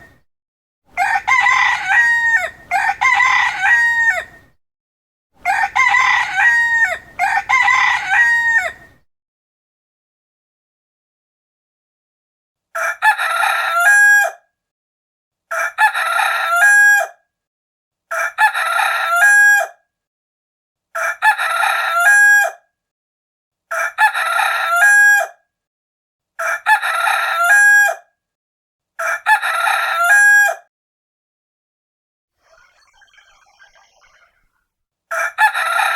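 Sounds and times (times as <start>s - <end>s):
rooster crowing: 0.9s - 4.4s, 5.4s - 9.0s, 12.8s - 14.4s, 29.0s - 30.6s, 35.1s - 35.9s.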